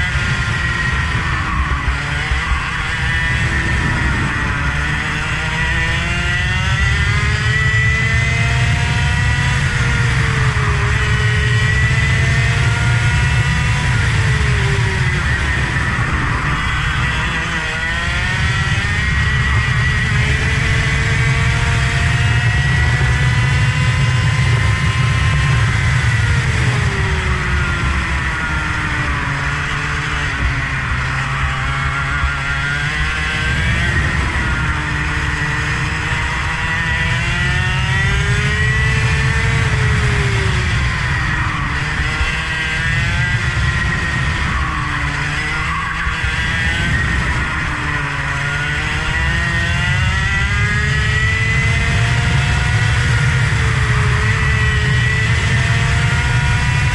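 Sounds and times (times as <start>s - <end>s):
vehicle engine revving: 0.0s - 56.9s.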